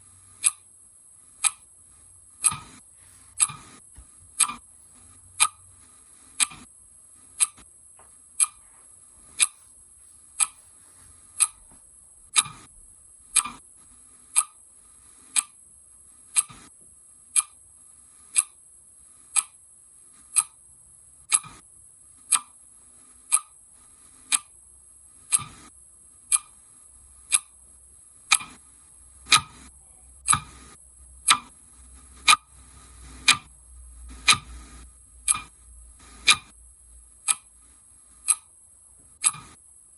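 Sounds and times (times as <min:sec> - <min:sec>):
faint high hiss: 0:00.0 - 0:20.4
clock ticking: 0:00.3 - 0:00.7, 0:01.4 - 0:01.7, 0:02.3 - 0:06.7, 0:07.3 - 0:07.7, 0:08.4 - 0:08.6, 0:09.3 - 0:09.6, 0:10.3 - 0:10.6, 0:11.3 - 0:12.7, 0:13.4 - 0:13.6, 0:14.3 - 0:14.6, 0:15.3 - 0:15.6, 0:16.3 - 0:16.7, 0:17.4 - 0:17.6, 0:18.3 - 0:18.6, 0:19.3 - 0:19.6, 0:20.3 - 0:20.6, 0:21.3 - 0:21.6, 0:22.3 - 0:22.6, 0:23.3 - 0:23.6, 0:24.2 - 0:24.6, 0:25.3 - 0:25.7, 0:26.3 - 0:26.6, 0:27.2 - 0:27.6, 0:28.3 - 0:28.6, 0:29.2 - 0:31.6, 0:32.2 - 0:36.6, 0:37.2 - 0:38.6, 0:39.2 - 0:39.6.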